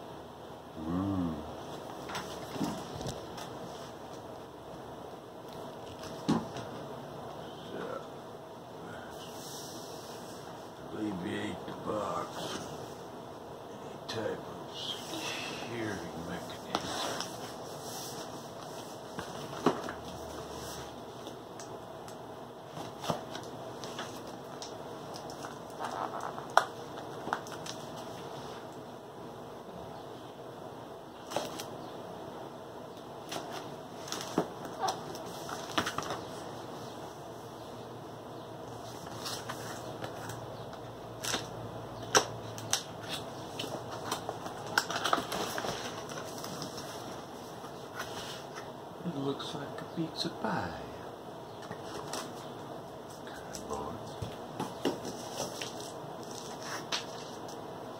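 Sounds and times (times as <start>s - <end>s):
cardboard crinkling rustle: 43.0s - 48.6s, 54.6s - 57.6s.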